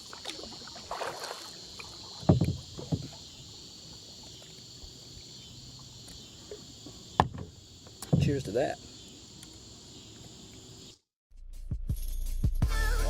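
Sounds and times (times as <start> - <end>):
insects chirring: 0.0 - 11.1
dull knocks on kayak hull: 2.2 - 3.2, 7.1 - 8.4.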